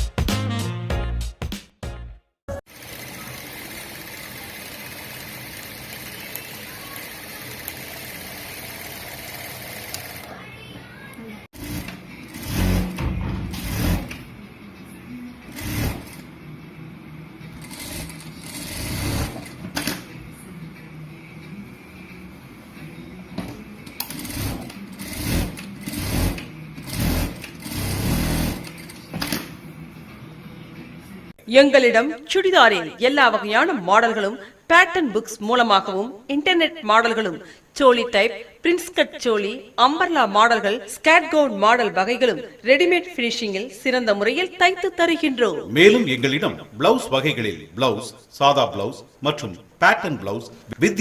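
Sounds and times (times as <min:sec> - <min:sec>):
electric sewing machine running: 0:02.7 - 0:10.3, 0:11.6 - 0:13.0, 0:13.6 - 0:14.2, 0:15.5 - 0:16.3, 0:17.5 - 0:20.0, 0:23.9 - 0:29.1.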